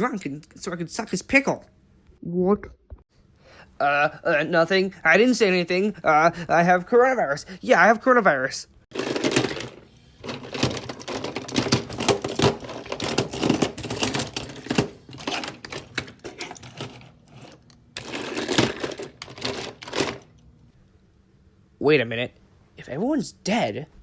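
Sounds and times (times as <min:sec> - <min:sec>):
faint motor hum: 0:08.9 - 0:21.7.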